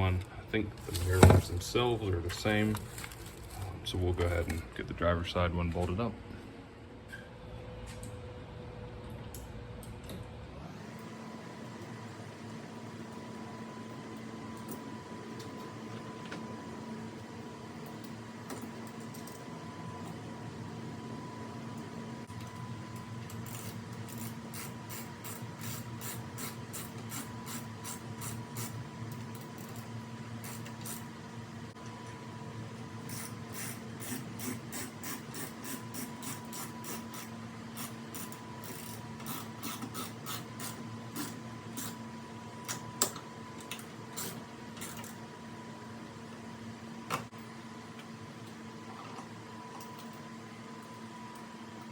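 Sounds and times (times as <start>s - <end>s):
ratchet wrench clicking: 23.5s - 28.7s, 33.1s - 42.0s.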